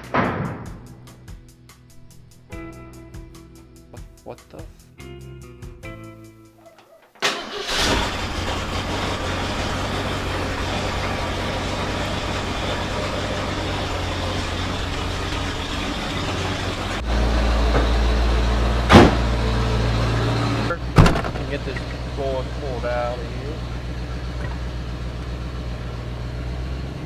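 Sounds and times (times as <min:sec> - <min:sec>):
truck engine idling: 0:07.2 - 0:27.0.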